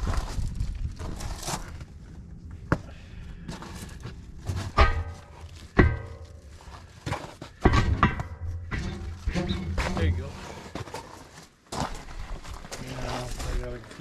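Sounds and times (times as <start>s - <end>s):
steel wheel parts clanking: 4.6s - 11.0s.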